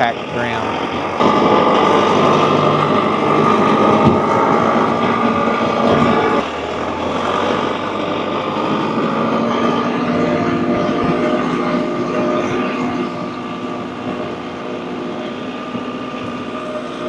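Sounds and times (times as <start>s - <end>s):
high steady whine: 0.0s - 17.0s
tractor engine running: 0.0s - 17.0s.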